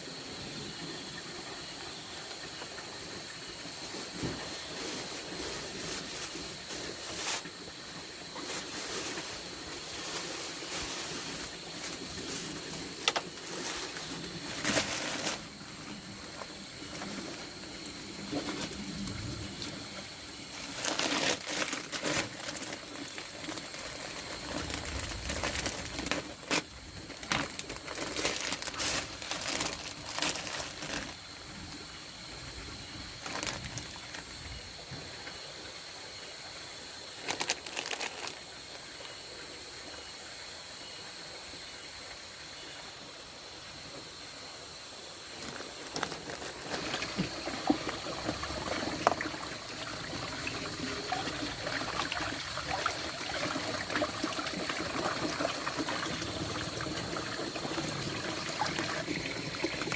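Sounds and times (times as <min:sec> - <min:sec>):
rustling and crinkling: 0:02.6 - 0:31.8, 0:32.6 - 0:34.5, 0:37.2 - 0:38.8, 0:45.3 - 0:56.0.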